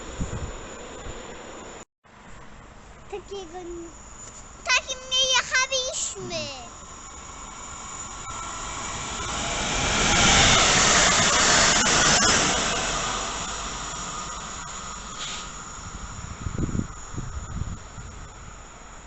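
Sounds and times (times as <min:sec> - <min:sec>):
train rolling past: 0:00.0 - 0:19.0
wheels clicking on track: 0:07.7 - 0:19.0.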